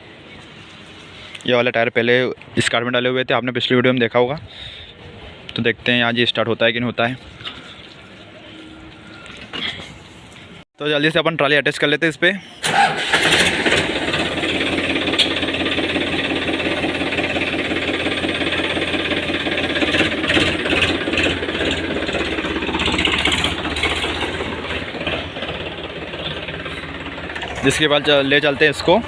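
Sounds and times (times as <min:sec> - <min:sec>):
diesel tractor engine idling: 0:12.6 - 0:29.0.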